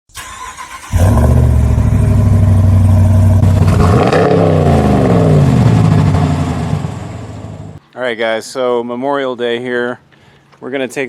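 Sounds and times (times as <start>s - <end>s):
pickup truck engine revving: 0.5s - 7.8s.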